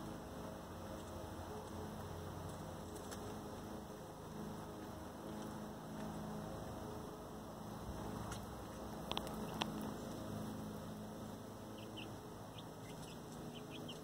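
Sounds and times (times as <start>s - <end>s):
steady low hum: 0.0s - 14.0s
chicks peeping: 8.2s - 10.2s, 11.7s - 14.0s.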